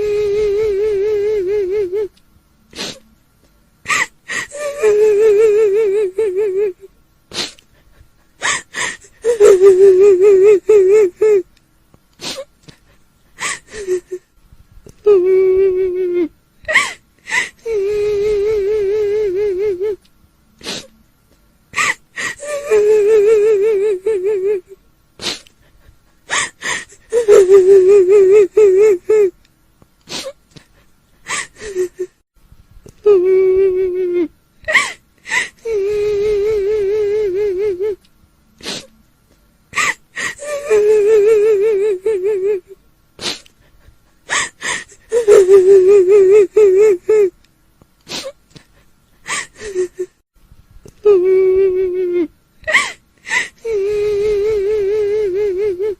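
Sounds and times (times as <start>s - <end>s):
high wavering wail like sobbing: 0.0s - 2.1s, 3.9s - 6.9s, 8.4s - 11.5s, 13.4s - 14.2s, 15.0s - 20.0s, 21.8s - 24.8s, 26.3s - 29.4s, 33.0s - 38.0s, 39.8s - 42.8s, 44.3s - 47.3s, 49.3s - 50.2s, 51.0s - 55.9s
sniffing gasping breaths: 2.7s - 3.1s, 7.3s - 9.2s, 12.2s - 14.1s, 20.6s - 21.0s, 25.2s - 27.1s, 30.0s - 32.0s, 38.6s - 38.9s, 43.2s - 45.1s, 48.0s - 50.0s.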